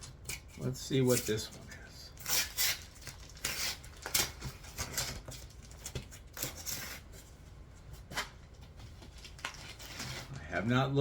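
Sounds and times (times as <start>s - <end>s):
packaging rustling and crinkling: 2.2s - 10.6s.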